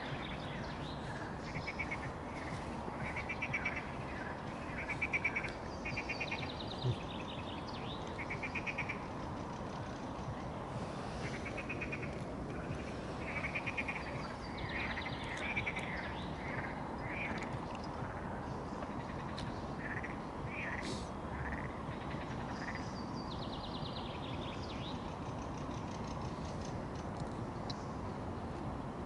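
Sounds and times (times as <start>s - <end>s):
frogs calling in chorus: 1.2s - 7.1s, 8.1s - 9.1s, 11.2s - 18.3s, 19.0s - 22.9s.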